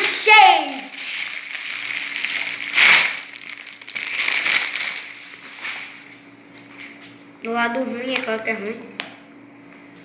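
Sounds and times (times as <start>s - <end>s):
plastic packaging crinkling: 0.0s - 6.3s.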